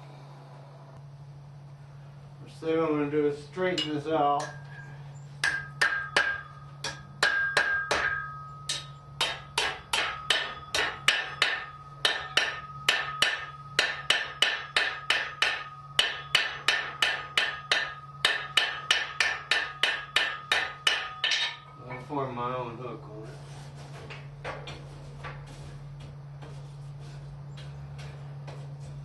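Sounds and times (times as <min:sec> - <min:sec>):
hammer striking steel on anvil: 0:03.7 - 0:04.7, 0:05.4 - 0:22.1.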